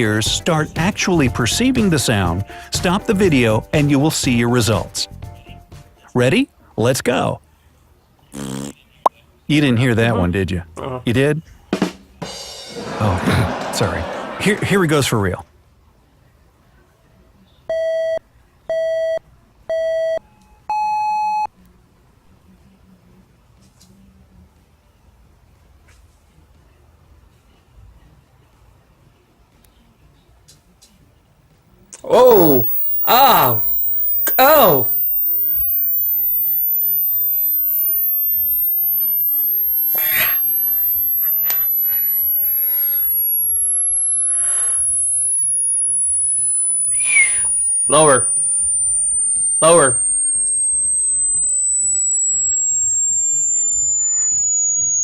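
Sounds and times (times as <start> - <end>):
electronic countdown beeps: 17.7 - 21.5, 32.1 - 55.0
high sine tone sweeping downward: 32.0 - 55.0.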